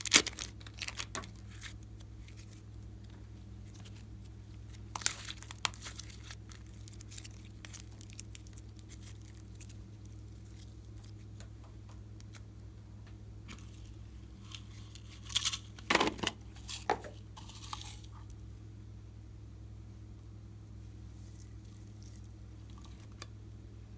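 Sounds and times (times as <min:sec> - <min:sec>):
slime clicking and squelching: 0:00.0 - 0:11.2
steady low hum: 0:00.0 - 0:23.9.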